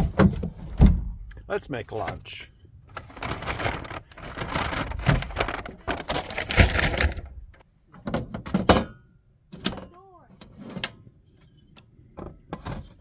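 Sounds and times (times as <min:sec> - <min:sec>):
camping gear rustling and clattering: 0:02.0 - 0:08.7.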